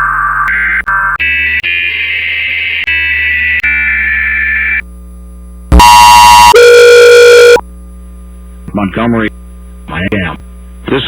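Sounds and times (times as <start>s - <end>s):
distorted blaring alert tone: 5.7s - 7.6s
screechy data tone: 5.7s - 7.6s.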